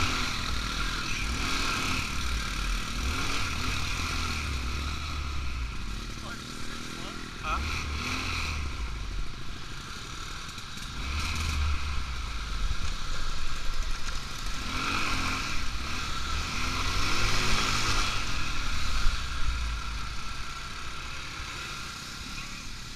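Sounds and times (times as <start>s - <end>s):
atv engine running: 0.0s - 22.9s.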